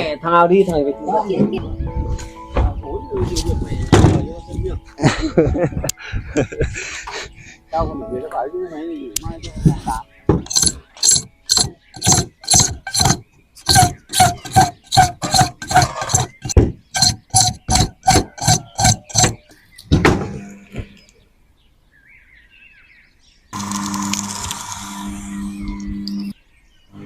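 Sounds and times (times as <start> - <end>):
rapid sharp knocks: 10.4 - 19.4.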